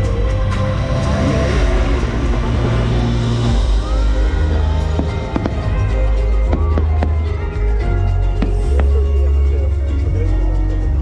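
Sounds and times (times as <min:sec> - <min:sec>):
loud music with deep bass: 0:00.0 - 0:11.0
fireworks going off: 0:04.8 - 0:05.9.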